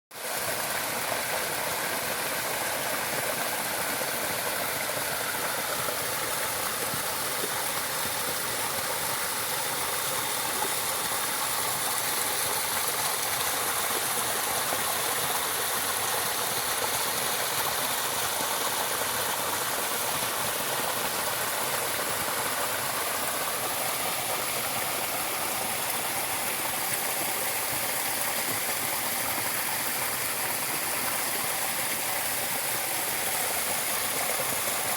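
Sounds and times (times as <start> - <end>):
running water: 0.2 - 34.9.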